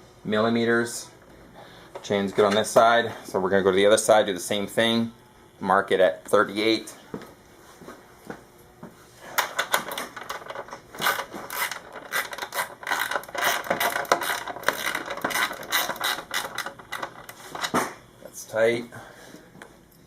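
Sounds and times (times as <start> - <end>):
ratchet wrench clicking: 11.0 - 17.1.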